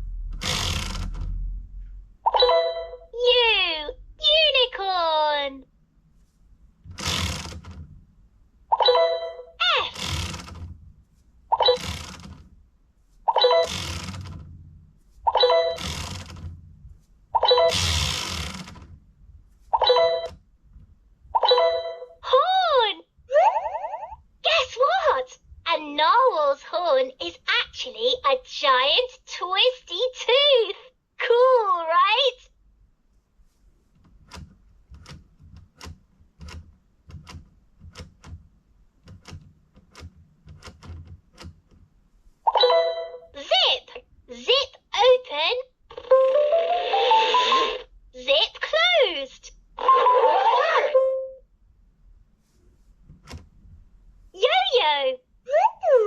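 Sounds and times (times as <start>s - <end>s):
plastic toy wheel clicking: 0.4s - 1.3s, 6.9s - 7.8s, 9.8s - 10.7s, 11.6s - 12.4s, 13.4s - 14.5s, 15.5s - 16.5s, 17.5s - 18.9s.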